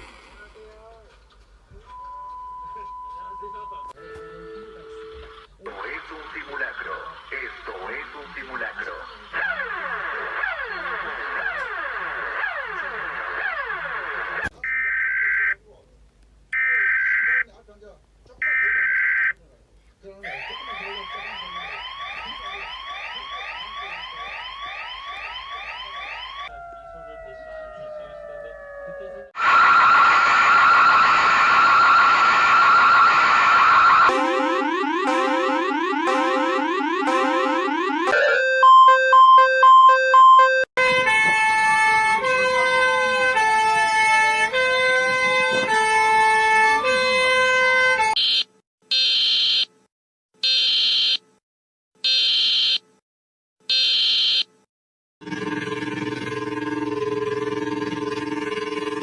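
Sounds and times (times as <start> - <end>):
electronic siren yelping: 9.4 - 15.6, 20.3 - 42.0
electronic alarm tone chord: 34.1 - 40.7
repeating alarm beeps: 34.1 - 40.7.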